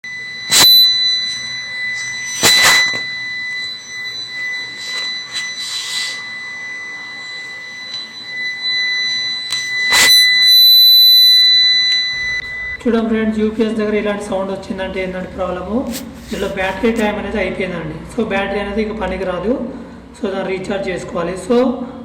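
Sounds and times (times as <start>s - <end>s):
continuous high-pitched alarm beep: 0.0s - 13.3s.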